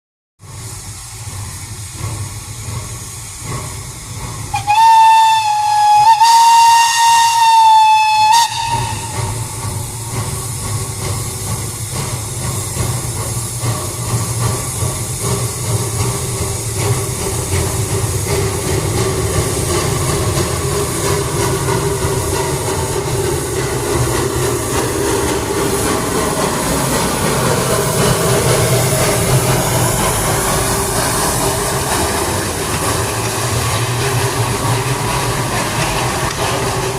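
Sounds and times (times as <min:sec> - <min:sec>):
rumble and hiss of steam: 0:00.4 - 0:36.9
steam locomotive whistle: 0:04.5 - 0:09.6.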